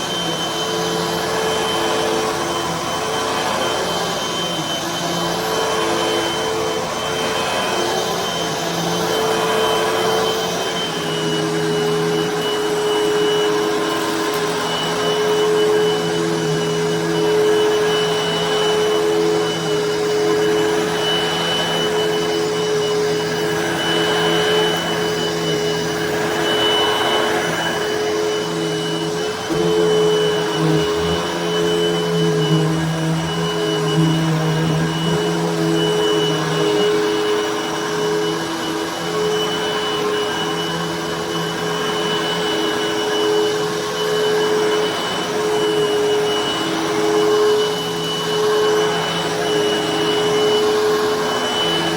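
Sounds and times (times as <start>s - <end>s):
vacuum cleaner running: 0.0s - 51.9s.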